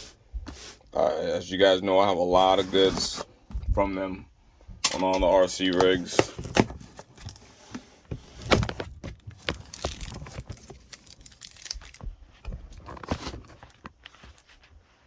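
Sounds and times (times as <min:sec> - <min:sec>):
cardboard box being opened: 0:06.0 - 0:14.8.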